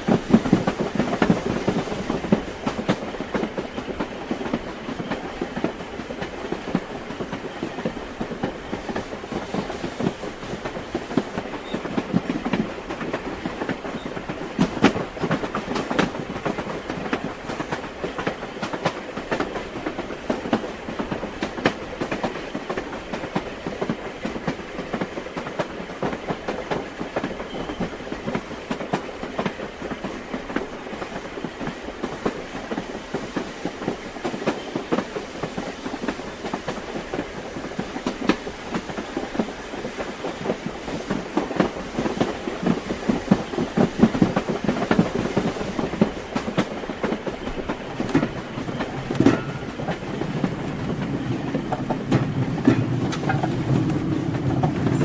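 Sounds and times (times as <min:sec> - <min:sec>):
train wheels clattering over rail joints: 0:00.0 - 0:55.0.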